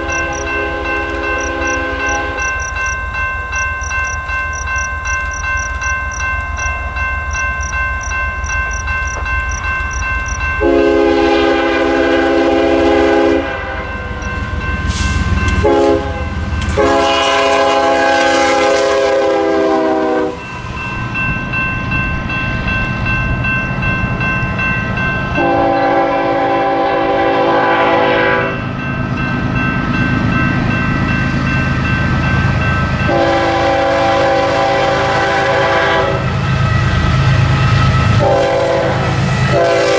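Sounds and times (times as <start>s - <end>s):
locomotive air horn chord blasts: 0.0s - 2.4s, 10.6s - 14.1s, 15.6s - 20.4s, 25.4s - 28.6s, 33.0s - 36.4s, 38.1s - 39.9s
low rumble of train: 0.0s - 39.9s.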